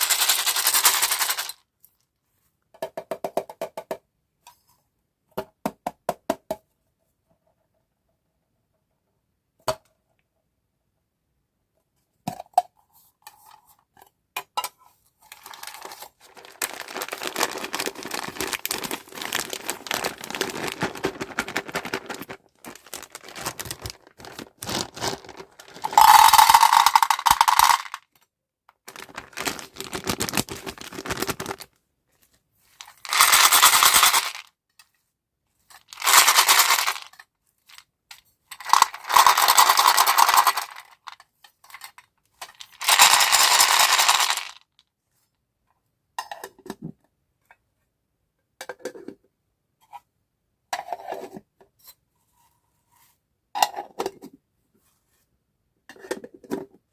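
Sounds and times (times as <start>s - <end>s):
candies pouring and rattling: 0.0s - 1.6s, 15.3s - 28.0s, 28.9s - 31.7s, 32.8s - 34.5s, 35.8s - 37.2s, 38.6s - 41.0s, 42.4s - 44.6s.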